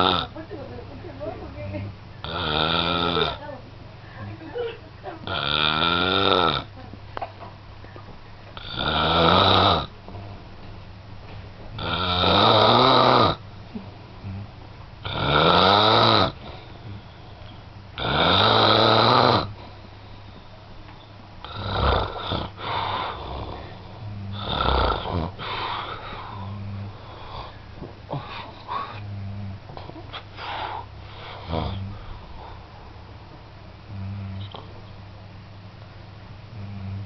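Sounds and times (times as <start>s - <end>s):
loud snoring: 0.0s - 0.3s, 2.2s - 3.4s, 5.2s - 6.7s, 8.6s - 9.9s, 11.8s - 13.4s, 14.2s - 17.0s, 18.0s - 19.6s, 21.4s - 29.7s, 30.4s - 32.2s, 33.9s - 34.7s, 36.5s - 37.0s.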